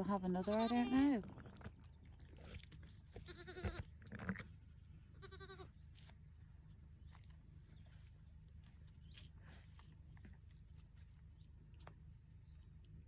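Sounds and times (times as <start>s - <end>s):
lamb bleating: 0.4s - 1.1s, 3.2s - 4.4s, 5.2s - 5.8s.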